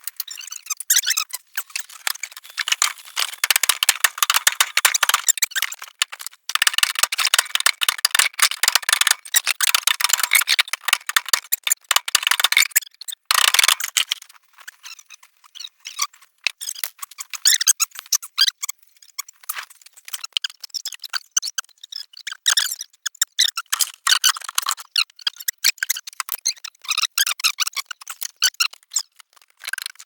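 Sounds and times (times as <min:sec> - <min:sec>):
hand tools clicking on sheet metal: 0:01.7 - 0:12.6.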